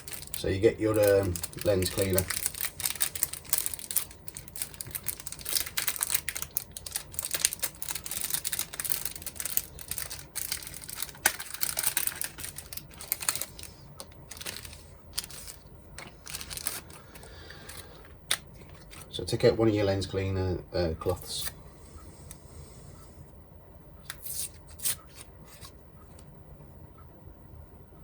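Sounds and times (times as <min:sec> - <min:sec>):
plastic packaging crinkling: 0:00.0 - 0:19.2.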